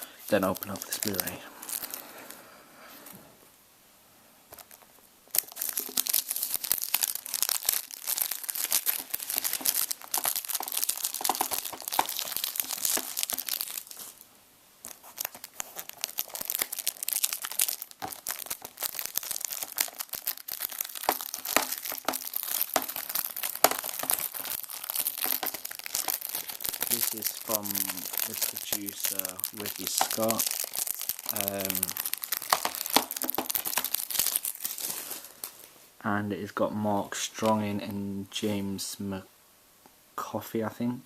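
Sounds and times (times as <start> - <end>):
plastic shrink-wrap tearing and crinkling: 0.0 - 2.0, 4.5 - 35.7.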